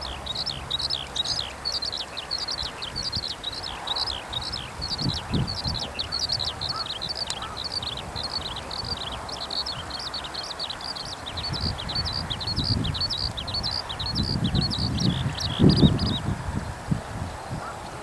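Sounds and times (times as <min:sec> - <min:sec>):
skylark singing: 0:00.0 - 0:16.3.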